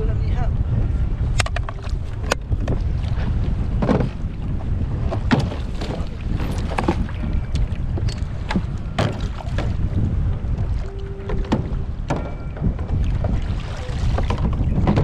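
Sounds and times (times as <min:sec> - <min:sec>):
wind rumbling on microphone: 0:00.0 - 0:15.0
knocks and clicks: 0:11.2 - 0:13.4.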